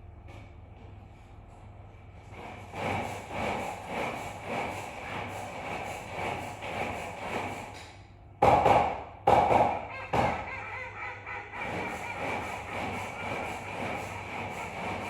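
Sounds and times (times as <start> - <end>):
duck quacking: 9.9 - 14.1.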